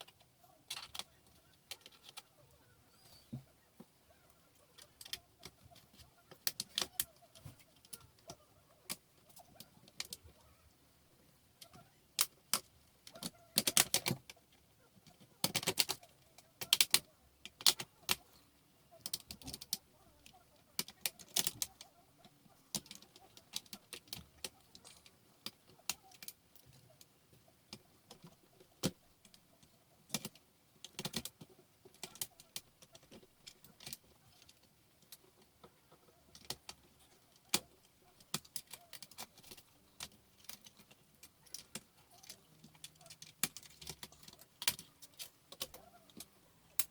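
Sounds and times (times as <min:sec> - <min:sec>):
small hard parts clicking: 0:00.0 - 0:02.3, 0:04.5 - 0:10.4, 0:11.5 - 0:18.4, 0:19.0 - 0:46.9.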